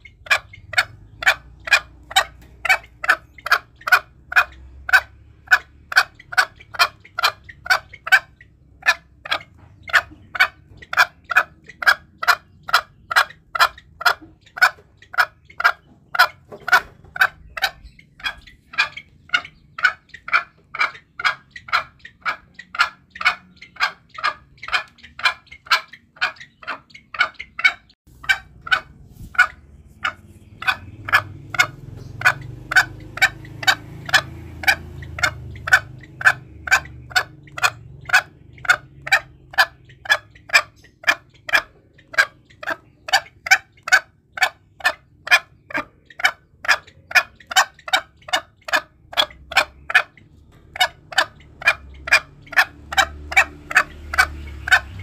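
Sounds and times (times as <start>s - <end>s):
junglefowl calling: 0.0s - 55.0s
low rumble: 28.1s - 40.4s.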